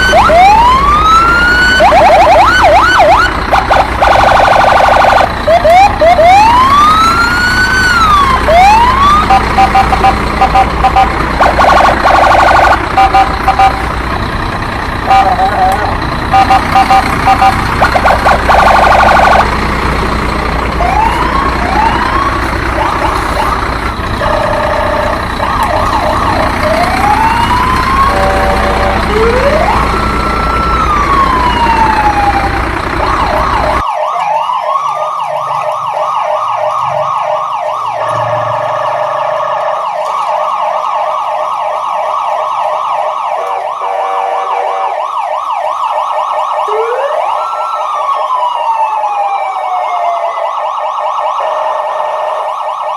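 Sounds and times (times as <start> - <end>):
electronic siren wailing: 0.0 - 13.9, 15.0 - 19.6, 20.8 - 52.9.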